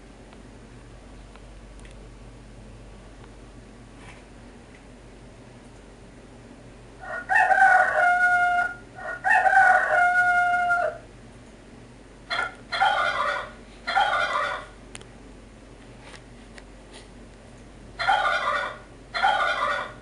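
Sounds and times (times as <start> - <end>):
rooster crowing: 7.0 - 11.1, 12.3 - 14.8, 18.0 - 20.0
rough rooster calls: 7.0 - 11.1, 12.3 - 14.8, 18.0 - 20.0.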